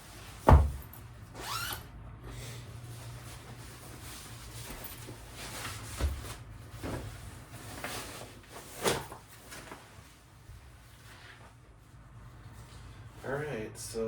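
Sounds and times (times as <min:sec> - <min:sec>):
knocks and rustles: 0:00.3 - 0:01.1, 0:03.4 - 0:09.9.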